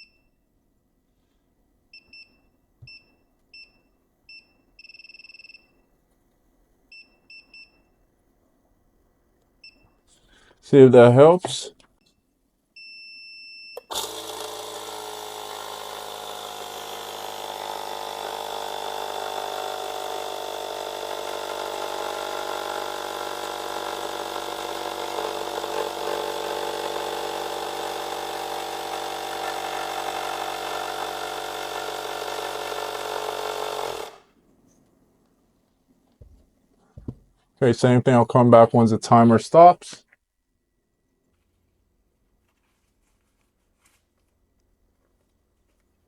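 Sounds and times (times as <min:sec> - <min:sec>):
pump running loudly: 0:13.9 - 0:34.2.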